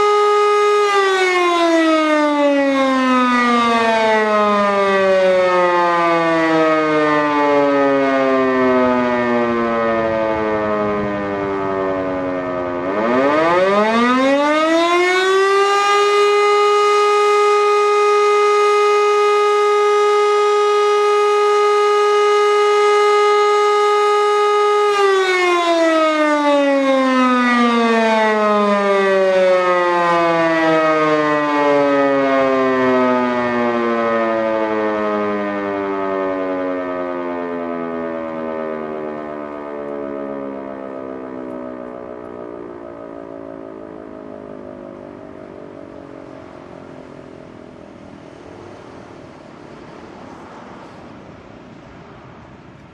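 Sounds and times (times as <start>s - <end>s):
civil defense siren wailing: 0.0s - 52.9s.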